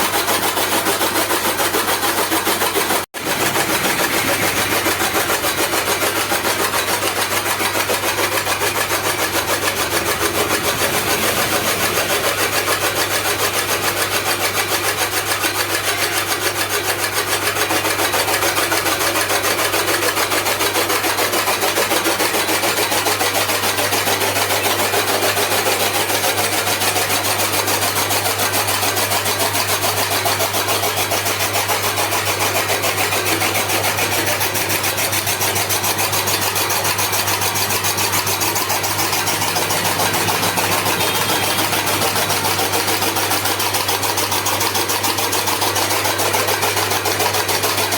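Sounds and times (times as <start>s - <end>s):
chaff cutter clattering: 0.0s - 47.9s.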